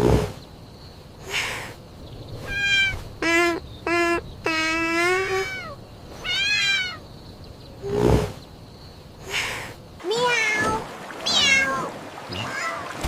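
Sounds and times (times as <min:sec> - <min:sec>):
cats meowing: 0:02.4 - 0:03.4, 0:04.0 - 0:07.0, 0:10.1 - 0:13.0.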